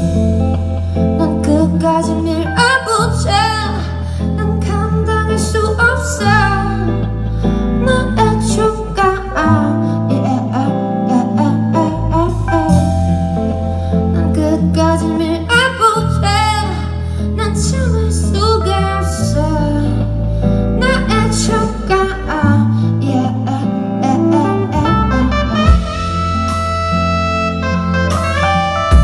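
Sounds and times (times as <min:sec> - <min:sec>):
live band playing: 0:00.0 - 0:03.9, 0:06.3 - 0:15.8, 0:23.9 - 0:29.0
person singing: 0:00.0 - 0:26.3.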